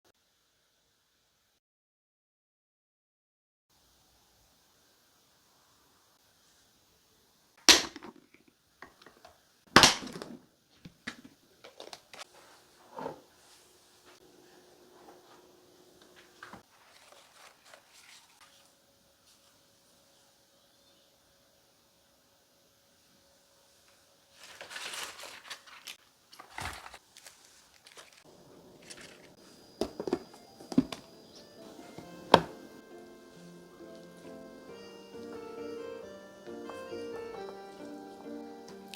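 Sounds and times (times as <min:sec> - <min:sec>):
plastic wrapping crinkling: 0:16.3 - 0:18.8, 0:24.3 - 0:31.1.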